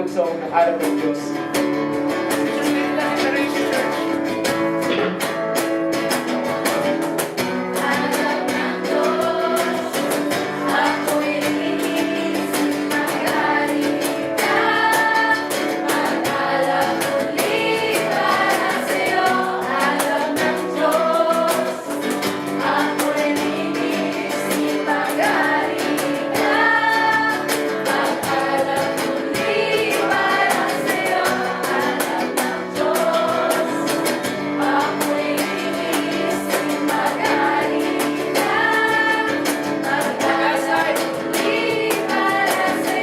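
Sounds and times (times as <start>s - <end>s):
strummed guitar: 0.0s - 43.0s
group of voices singing: 2.1s - 5.2s, 7.3s - 43.0s
steady beat: 4.6s - 5.8s.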